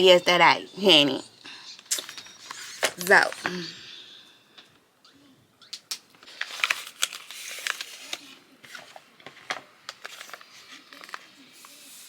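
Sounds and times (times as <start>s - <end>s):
crinkly packaging crackling: 1.8s - 3.7s, 5.8s - 12.0s.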